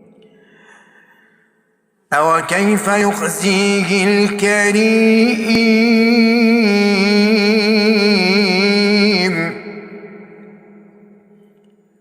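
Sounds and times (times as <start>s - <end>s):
man chanting: 2.1s - 10.8s.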